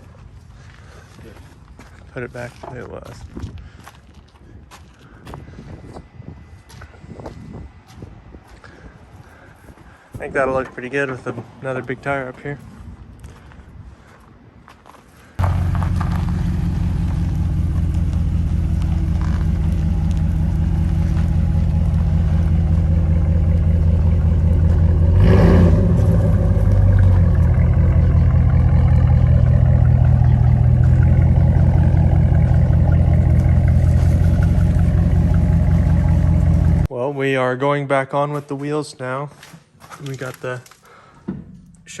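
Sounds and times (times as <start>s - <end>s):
engine humming steadily: 15.4s - 36.9s.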